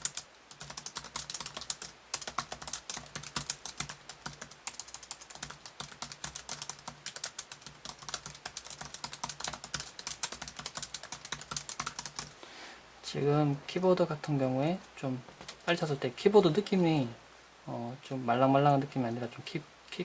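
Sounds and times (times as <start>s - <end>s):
laptop keyboard typing: 0.0s - 12.4s.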